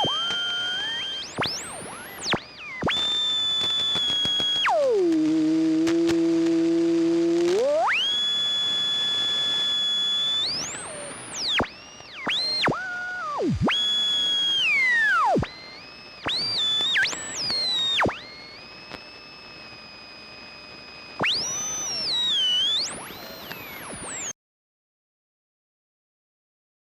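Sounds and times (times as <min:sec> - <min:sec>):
radio tuning whistles: 0:00.0 - 0:24.3.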